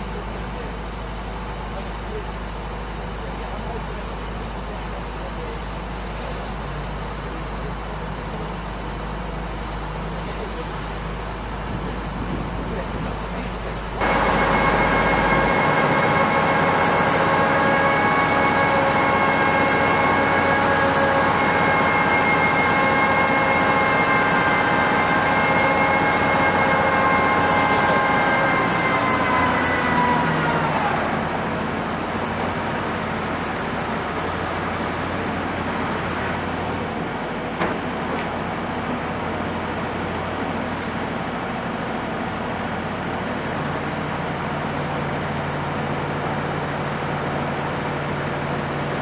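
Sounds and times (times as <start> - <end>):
low mechanical hum: 0.0 - 49.0
machinery high tonal whine: 0.0 - 49.0.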